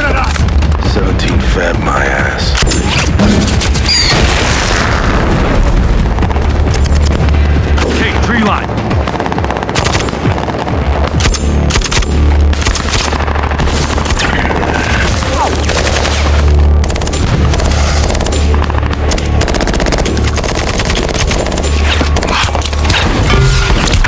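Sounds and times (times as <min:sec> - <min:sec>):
automatic gunfire bursts: 0:11.0 - 0:24.0.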